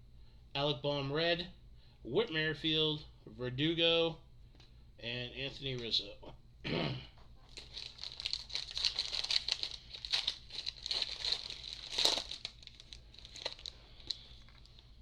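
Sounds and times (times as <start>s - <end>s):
foil wrapper crinkling: 7.5s - 15.0s.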